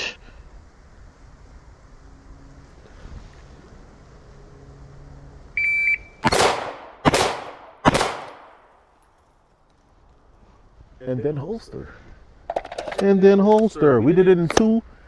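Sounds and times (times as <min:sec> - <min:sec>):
shot timer beep: 0:05.6 - 0:06.2
handgun shots echoing: 0:06.2 - 0:08.6.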